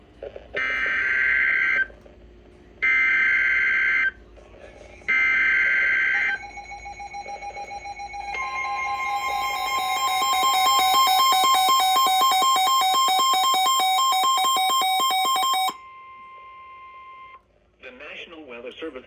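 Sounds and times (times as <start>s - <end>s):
buzzing data tone bursts: 5.1s - 15.8s
pulsing alarm tone: 5.1s - 15.8s.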